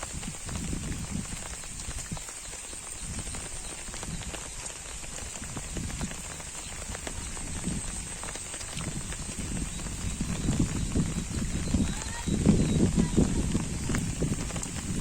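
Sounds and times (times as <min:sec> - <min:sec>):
rain on an umbrella: 0:00.0 - 0:15.0.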